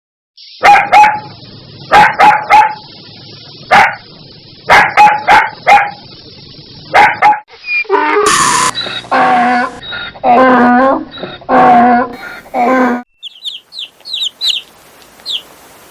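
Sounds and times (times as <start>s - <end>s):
dog barking: 0.6s - 1.3s, 1.9s - 2.8s, 3.7s - 4.0s, 4.7s - 6.0s, 6.9s - 7.5s
steady hiss: 1.2s - 7.0s, 13.5s - 15.9s
high-pitched animal call: 7.6s - 14.6s.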